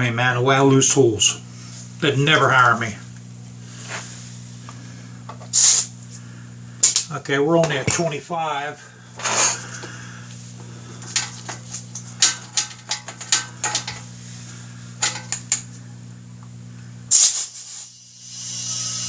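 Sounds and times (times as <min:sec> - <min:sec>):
low steady hum: 0:00.0 - 0:17.1
compressed air hissing into tire: 0:03.6 - 0:04.8, 0:05.4 - 0:06.2, 0:17.1 - 0:19.0.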